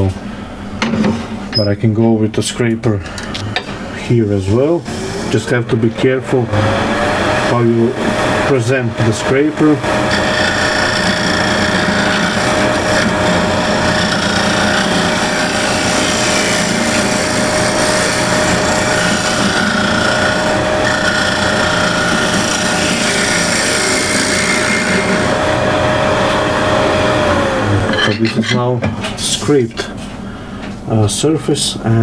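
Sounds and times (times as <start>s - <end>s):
wood lathe motor whine: 3.8s - 28.2s
scraper cutting spinning wood: 4.7s - 28.0s.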